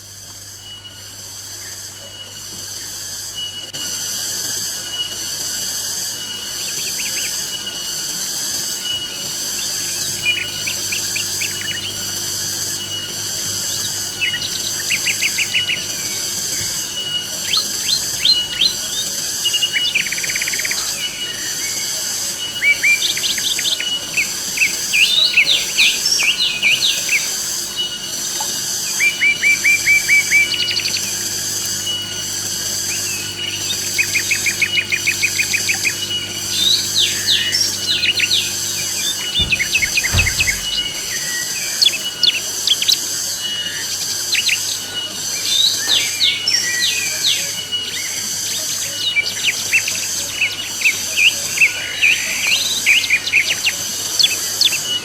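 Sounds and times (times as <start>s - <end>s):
pulsing hiss: 0.0s - 47.8s
birds chirping: 6.0s - 43.0s.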